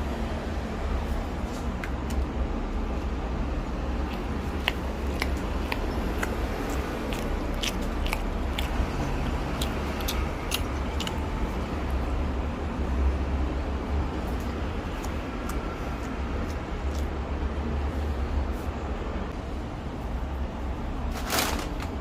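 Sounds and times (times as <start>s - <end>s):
steady low rumble: 0.0s - 21.2s
person chewing food: 3.7s - 12.1s, 14.1s - 17.4s.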